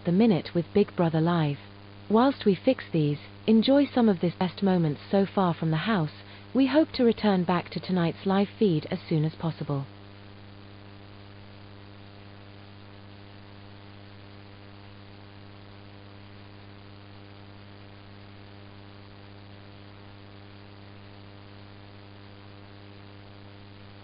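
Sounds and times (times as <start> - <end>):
electrical mains hum: 0.0 - 24.0.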